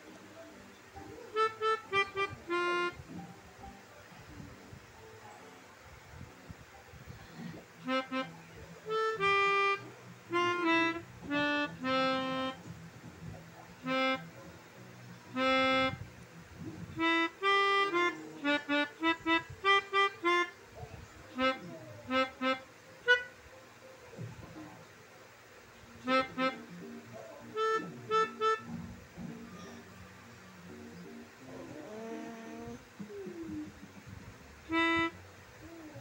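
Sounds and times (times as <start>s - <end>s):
multi-note air horn tune: 34.7s - 35.2s.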